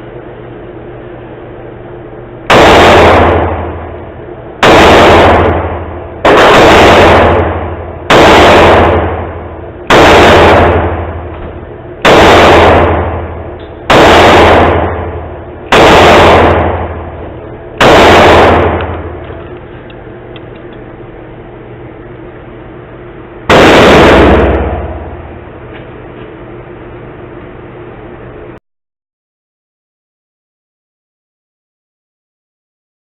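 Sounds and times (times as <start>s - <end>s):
pistol shots: 2.5s - 3.9s, 4.6s - 19.3s, 23.5s - 25.3s.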